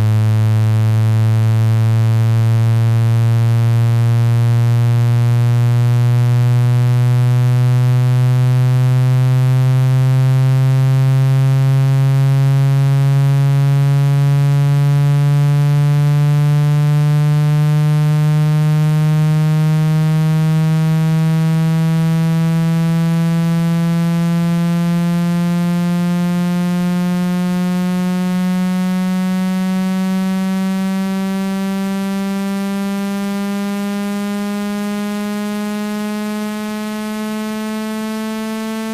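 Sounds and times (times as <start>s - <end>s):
buzzing tone sweeping upward: 20.1s - 38.9s.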